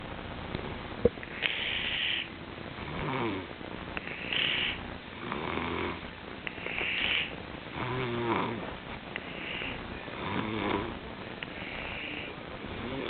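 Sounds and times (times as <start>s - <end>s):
person snoring: 1.3s - 6.0s, 6.6s - 8.7s, 9.3s - 11.0s, 11.6s - 13.0s.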